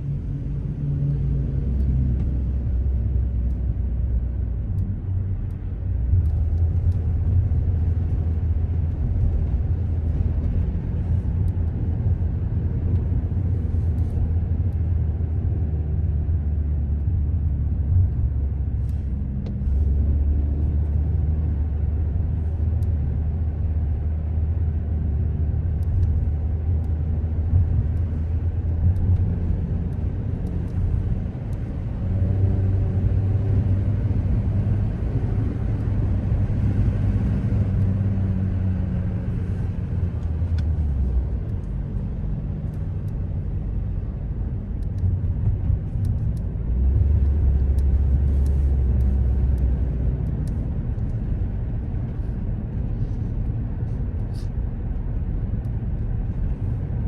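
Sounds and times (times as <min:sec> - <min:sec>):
car engine and road rumble: 0:00.0 - 0:57.0.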